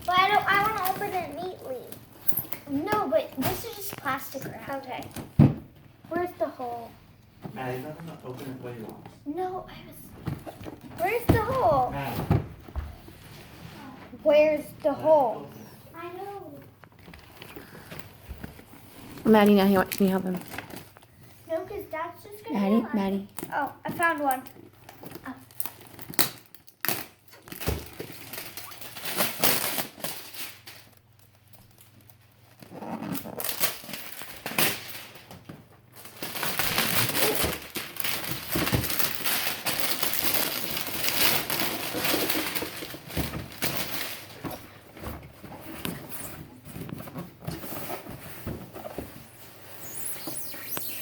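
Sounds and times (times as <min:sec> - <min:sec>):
plastic shrink wrap tearing: 0:24.1 - 0:35.3, 0:36.0 - 0:44.4.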